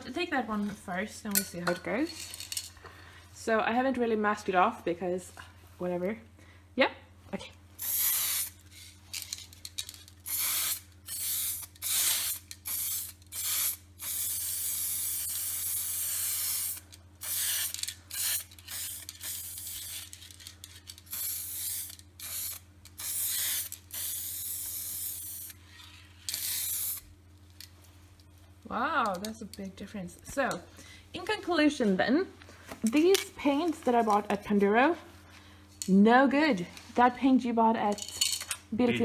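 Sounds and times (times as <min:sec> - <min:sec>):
spray paint can hissing: 0:07.8 - 0:08.6, 0:10.2 - 0:20.2, 0:21.1 - 0:25.6, 0:26.3 - 0:27.1.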